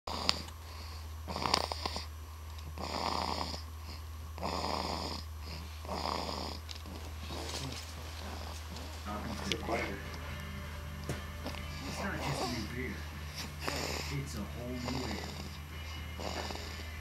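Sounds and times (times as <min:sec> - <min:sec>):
person snoring: 0:00.1 - 0:00.5, 0:01.3 - 0:02.1, 0:02.8 - 0:08.6, 0:11.4 - 0:17.0
steady low hum: 0:00.1 - 0:17.0.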